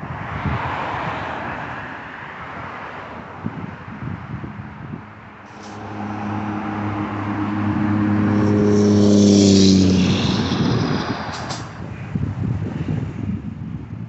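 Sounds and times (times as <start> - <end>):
vehicle passing by: 5.2 - 12.2.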